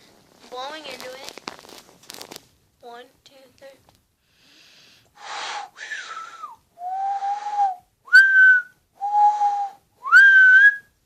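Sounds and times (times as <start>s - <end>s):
cupped-hand whistle hooting: 5.6s - 11.0s.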